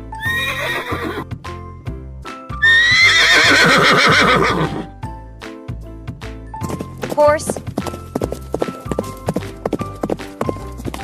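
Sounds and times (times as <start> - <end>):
horse whinnying: 0.2 - 1.3, 2.6 - 4.9.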